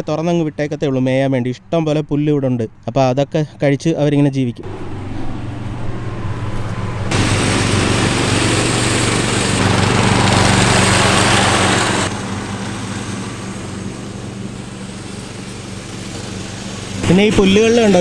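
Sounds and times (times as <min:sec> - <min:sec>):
loud rushing noise: 0:04.6 - 0:18.0
riding lawn mower engine: 0:04.6 - 0:18.0.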